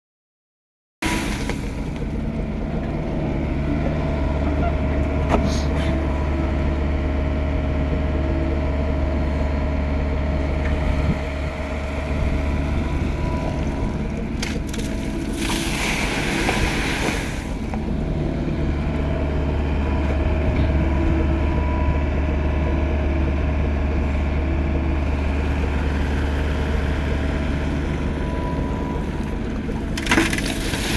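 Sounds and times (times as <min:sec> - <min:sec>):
excavator engine running: 0:01.0 - 0:30.9.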